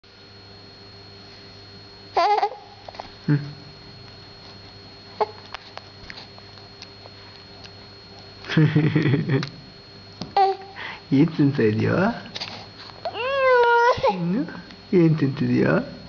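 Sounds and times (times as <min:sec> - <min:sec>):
baby babbling: 0:02.2 - 0:02.7, 0:10.4 - 0:10.8, 0:13.1 - 0:14.2.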